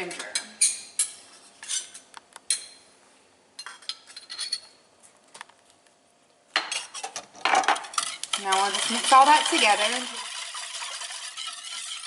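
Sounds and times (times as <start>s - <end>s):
utensil clinking against bowl: 6.6s - 12.0s.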